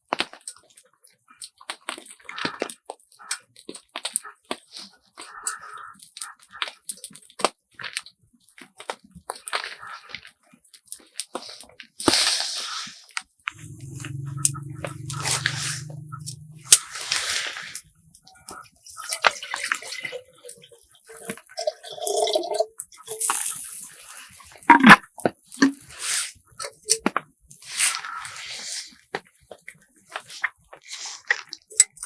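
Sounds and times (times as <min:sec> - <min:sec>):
low steady buzz: 0:13.6 - 0:17.3.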